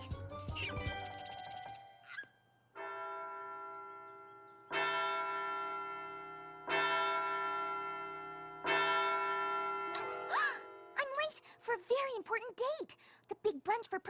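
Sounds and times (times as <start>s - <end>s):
large bell tolling: 2.8s - 11.0s.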